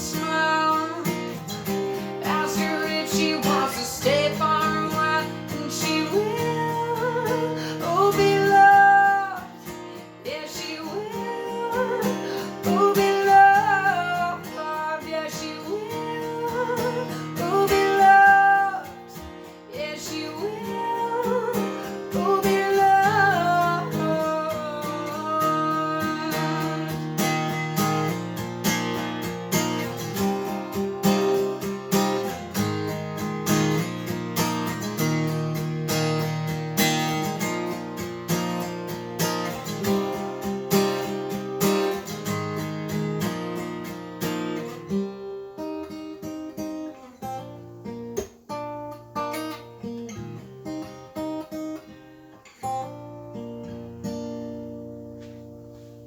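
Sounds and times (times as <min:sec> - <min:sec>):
woman singing: 0:00.0 - 0:28.2
guitar strumming: 0:00.0 - 0:56.0.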